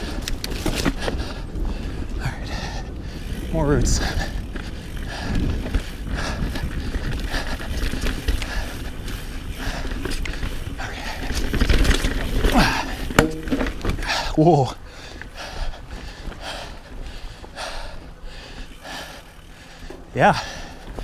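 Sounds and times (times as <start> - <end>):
bike clattering over roots: 0.0 - 2.1, 4.4 - 14.5.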